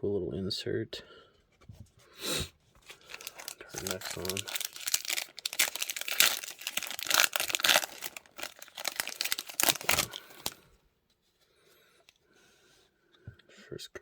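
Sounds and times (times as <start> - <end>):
wrapper tearing and crinkling: 2.8 - 10.6.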